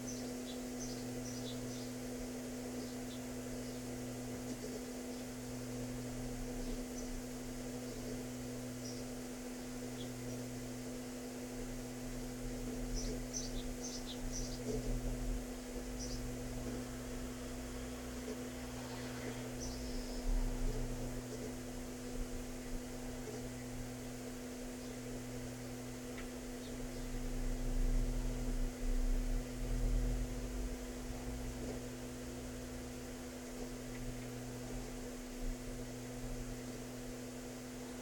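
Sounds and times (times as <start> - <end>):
low electrical hum: 0.0 - 38.0.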